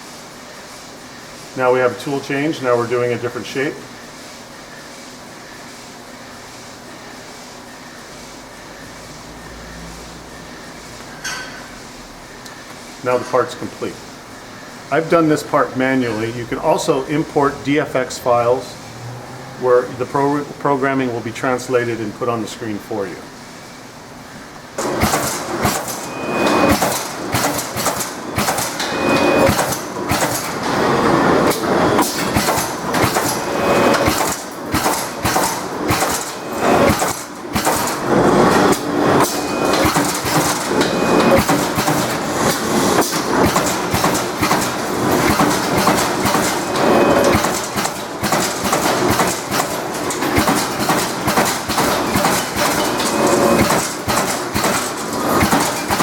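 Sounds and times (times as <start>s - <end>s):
punch press metallic strokes: 24.8s - 56.0s
short high machine tones: 25.9s - 26.9s, 28.3s - 29.9s, 30.7s - 34.1s, 38.1s - 41.7s, 46.6s - 47.5s.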